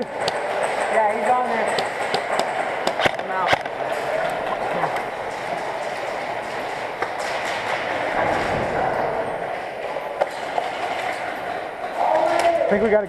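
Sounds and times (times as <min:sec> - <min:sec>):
sharp clicks or knocks: 0:01.6 - 0:12.6.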